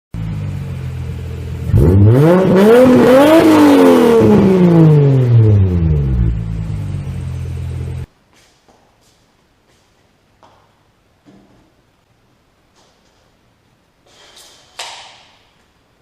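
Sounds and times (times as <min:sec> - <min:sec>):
car engine idling and revving: 0:00.2 - 0:08.1.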